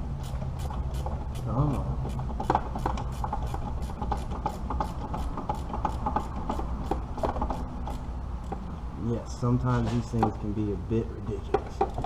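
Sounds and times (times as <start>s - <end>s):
steady low hum: 0.0s - 12.0s
ratchet wrench clicking: 0.2s - 8.1s.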